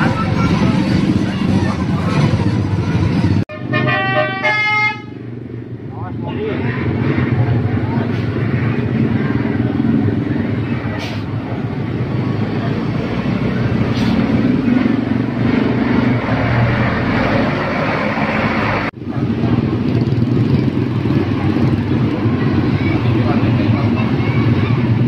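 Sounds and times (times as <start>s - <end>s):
bus engines passing: 0.0s - 25.0s.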